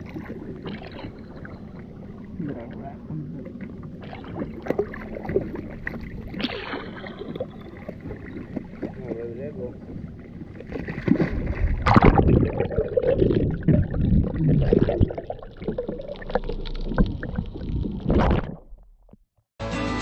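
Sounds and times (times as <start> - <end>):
water sloshing: 0.0 - 18.8
rumbling noise: 11.3 - 19.2.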